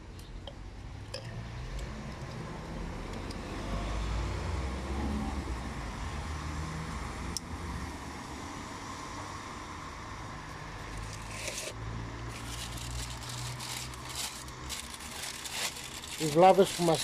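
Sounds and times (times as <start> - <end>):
motor vehicle rumble: 10.1 - 17.0
rustling: 11.0 - 17.0.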